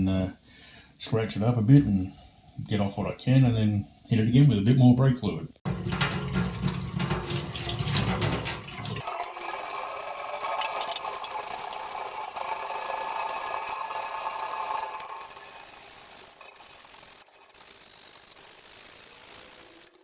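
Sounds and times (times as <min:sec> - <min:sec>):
water running in a sink: 0:05.7 - 0:20.0.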